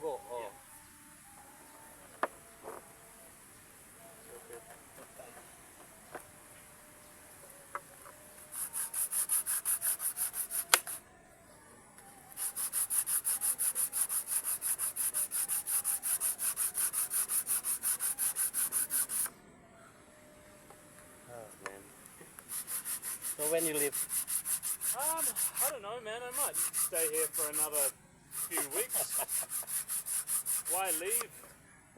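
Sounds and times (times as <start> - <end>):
hand sanding strokes: 8.0 - 11.0, 12.3 - 19.3, 22.4 - 31.5.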